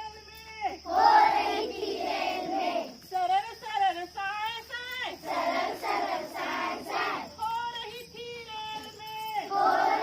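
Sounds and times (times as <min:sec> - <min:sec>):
children singing in chorus: 0:00.9 - 0:03.0, 0:05.2 - 0:07.4, 0:09.4 - 0:10.0.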